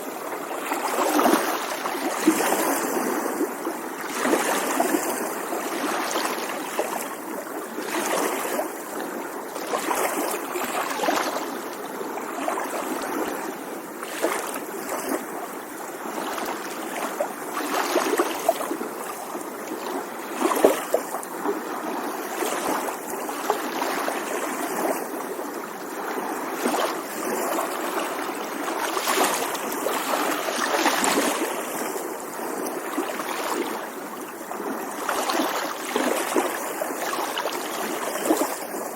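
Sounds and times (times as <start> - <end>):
small waves lapping: 0.0 - 38.9
water splash: 28.7 - 31.8.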